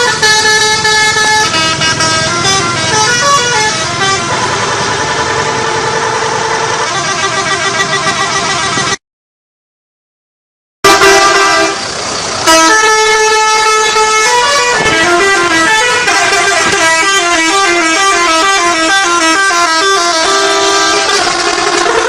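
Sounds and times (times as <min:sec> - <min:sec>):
multi-tone bus horn melody: 0:00.0 - 0:09.0, 0:10.8 - 0:22.0.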